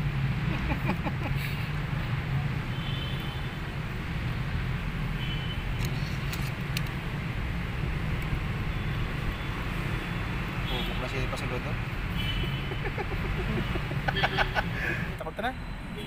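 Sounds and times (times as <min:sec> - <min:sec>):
vehicle engine rumbling: 0:03.9 - 0:16.0.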